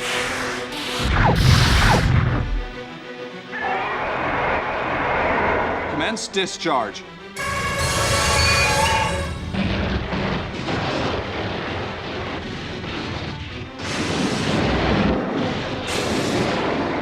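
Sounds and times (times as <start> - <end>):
energy beam and explosion effects: 0.0 - 2.8, 8.8 - 17.0
background music: 0.0 - 17.0.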